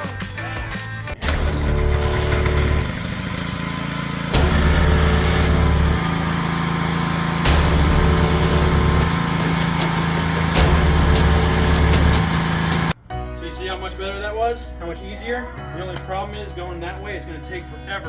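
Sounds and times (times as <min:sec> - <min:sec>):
pump low rumble: 0:01.2 - 0:13.0
small engine running: 0:01.2 - 0:13.0
water jet spraying pavement: 0:02.1 - 0:13.0.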